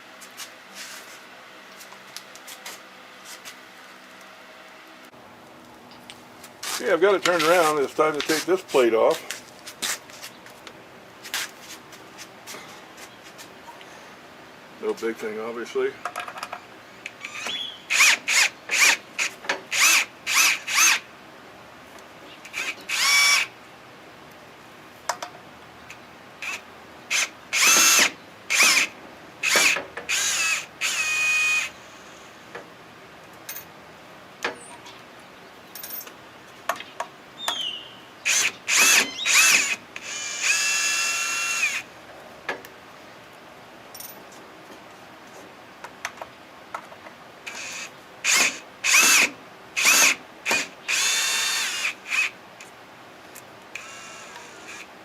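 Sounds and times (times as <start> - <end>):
cordless drill motor whining: 17.2 - 21.0, 22.5 - 23.5, 26.4 - 32.2, 38.3 - 41.9, 47.5 - 50.2, 50.9 - 52.3, 53.8 - 54.9.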